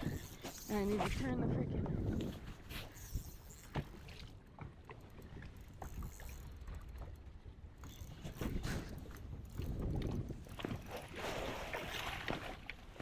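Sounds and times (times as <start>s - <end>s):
water and wind on boat hull: 0.0s - 13.0s
small knocks and splashes: 9.6s - 13.0s.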